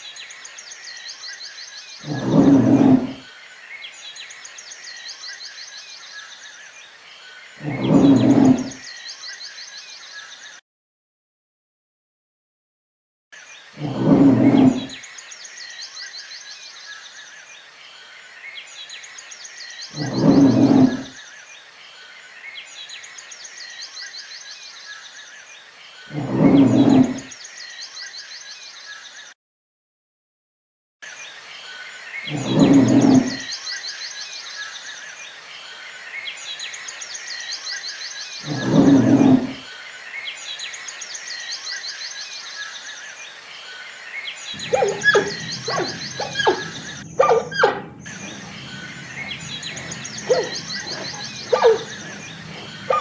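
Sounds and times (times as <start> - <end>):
deep animal calls: 2.0 - 3.2, 7.6 - 8.8, 13.8 - 15.0, 19.9 - 21.2, 26.1 - 27.3, 32.3 - 33.5, 38.4 - 39.6, 44.5 - 53.0
sharp animal calls: 2.0 - 3.2, 19.9 - 21.1, 26.1 - 27.3, 32.3 - 33.4, 38.4 - 39.6, 44.5 - 53.0
high insect or bird trills: 31.2 - 53.0.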